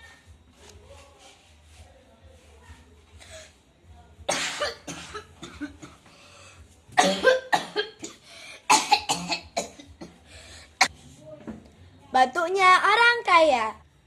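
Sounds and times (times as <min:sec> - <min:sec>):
person coughing: 0:07.0 - 0:10.2.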